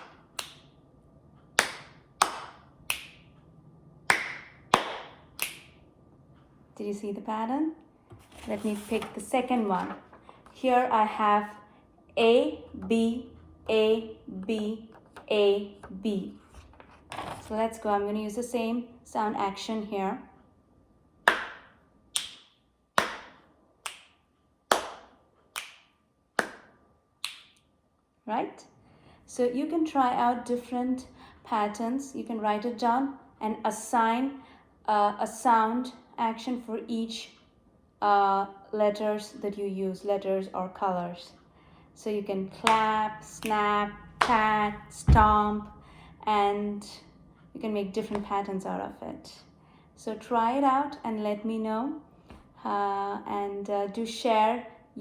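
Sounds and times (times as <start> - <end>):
hand claps: 0.0 - 0.6, 1.6 - 3.2, 4.1 - 5.7, 21.3 - 24.1, 24.7 - 27.5
finger snaps: 4.1 - 5.8, 22.2 - 27.7.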